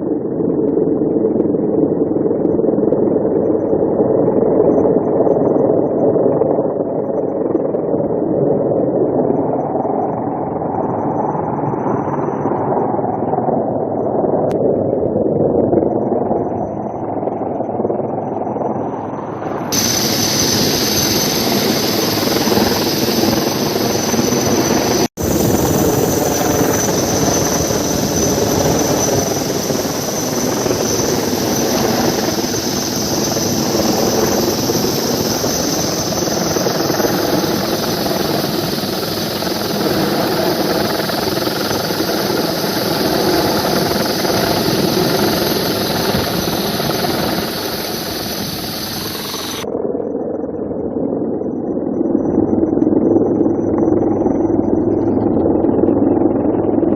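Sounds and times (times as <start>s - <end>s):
helicopter engine and rotor drone: 0.0s - 56.9s.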